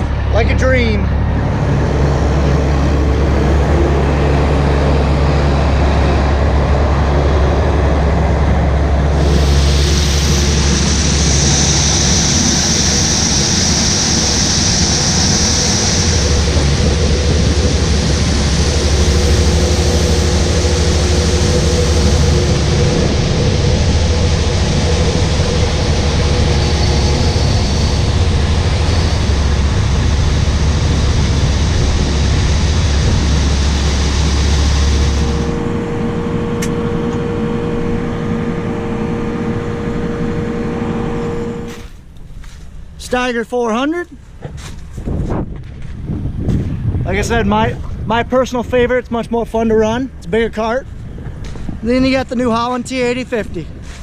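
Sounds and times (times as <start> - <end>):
diesel machinery droning: 0.0 - 54.0
broad hiss: 9.1 - 35.6.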